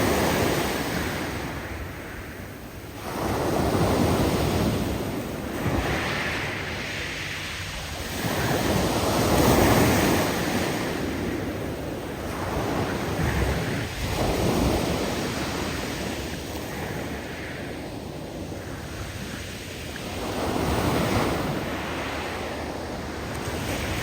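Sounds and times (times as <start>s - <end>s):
big waves breaking on shore: 0.0s - 24.0s.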